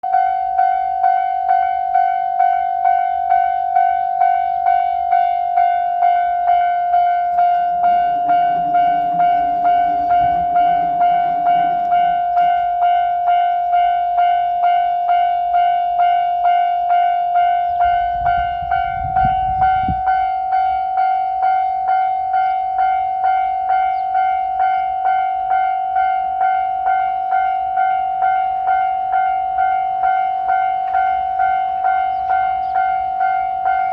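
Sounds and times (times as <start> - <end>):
level crossing warning bell: 0.0 - 33.9
low drone: 17.6 - 20.5.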